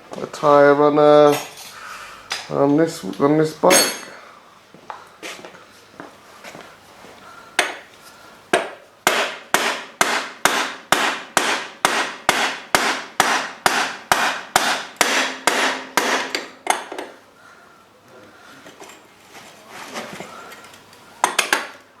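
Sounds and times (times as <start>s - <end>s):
hammer blows ringing: 3.7s - 4.2s, 8.5s - 16.9s.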